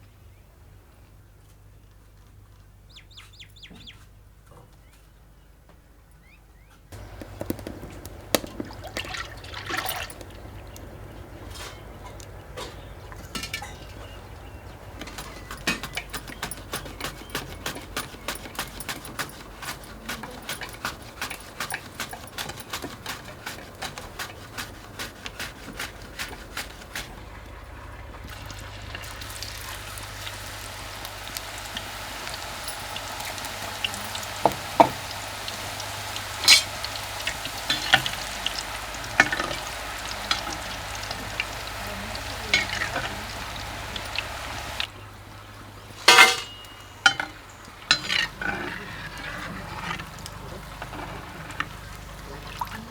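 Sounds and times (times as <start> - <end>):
crackles and pops: 7.0 - 9.0
food sizzling in hot oil: 28.2 - 44.9, 46.0 - 48.4.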